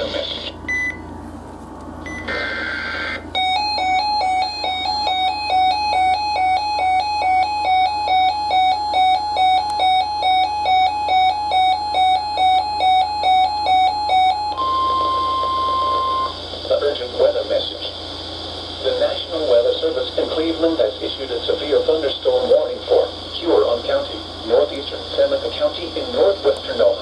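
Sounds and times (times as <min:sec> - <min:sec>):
weather alert radio alarm tone: 0:02.1 - 0:16.4.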